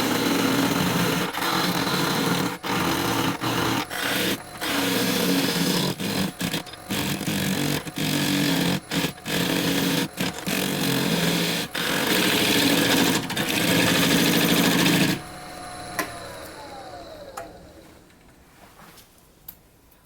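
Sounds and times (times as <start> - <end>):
lathe tool cutting wood: 0.0 - 17.8
lathe whine slowing down: 8.3 - 18.1.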